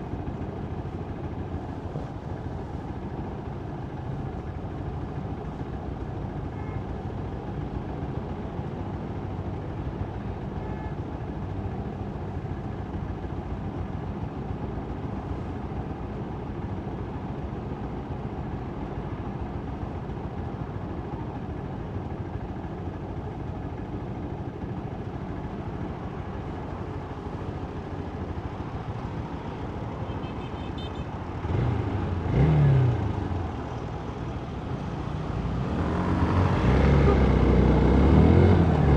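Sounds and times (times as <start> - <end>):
wind and road noise rumble: 0.0 - 38.9
passing vehicle engine: 28.7 - 38.9.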